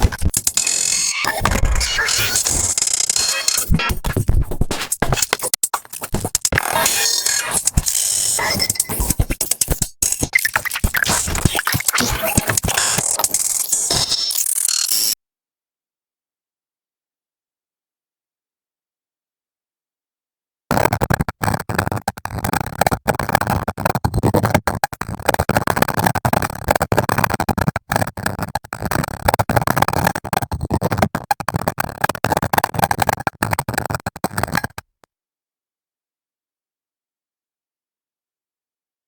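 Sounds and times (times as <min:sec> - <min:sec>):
choppy gritty synthetic noise: 0:00.0 - 0:15.2.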